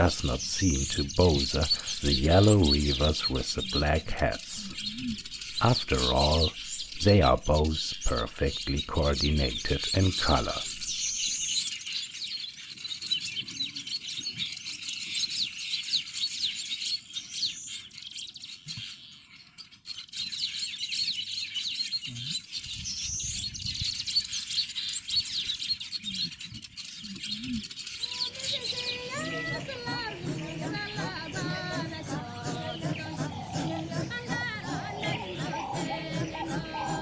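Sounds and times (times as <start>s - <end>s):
weaver birds chattering: 0.0s - 37.0s.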